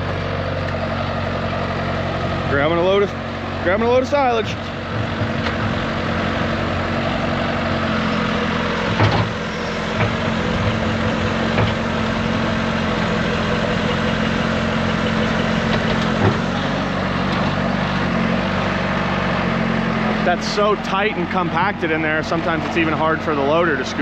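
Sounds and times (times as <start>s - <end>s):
loader engine running: 0.0s - 24.0s
metal clunks: 8.8s - 11.9s.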